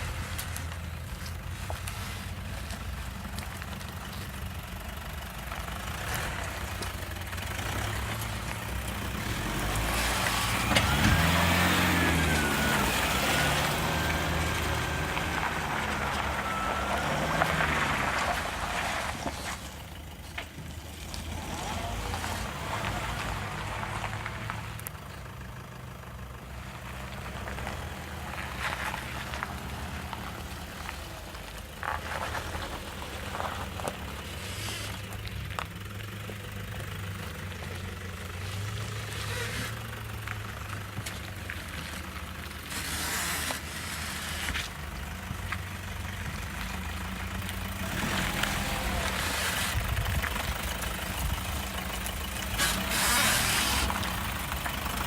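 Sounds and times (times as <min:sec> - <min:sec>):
diesel engine running: 0:00.0 - 0:55.0
suspension creaking and squeaking: 0:00.0 - 0:55.0.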